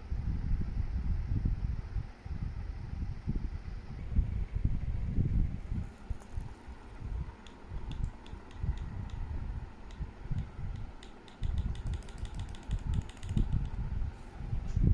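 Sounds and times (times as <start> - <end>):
laptop keys clicking: 5.9 - 13.8.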